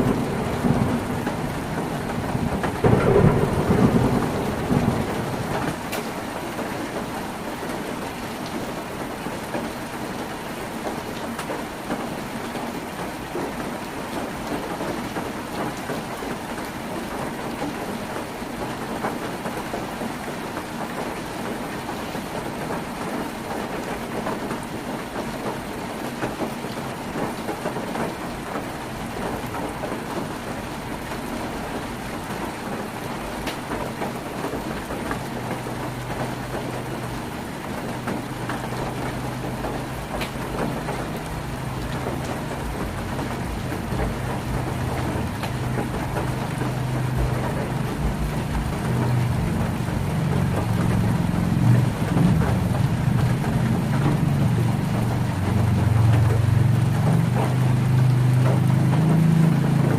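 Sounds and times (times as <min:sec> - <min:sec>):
rain on a tin roof: 0:00.0 - 0:59.9.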